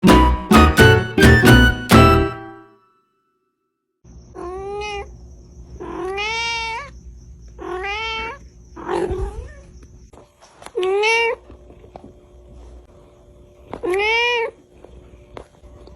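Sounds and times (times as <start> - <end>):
cat meowing: 4.4 - 5.1, 5.8 - 6.9, 7.6 - 9.7, 10.8 - 11.4, 13.8 - 14.6.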